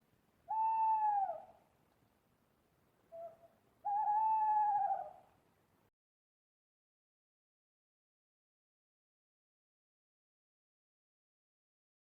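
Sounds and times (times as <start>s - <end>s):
owl hooting: 0.5s - 1.6s, 3.1s - 5.3s.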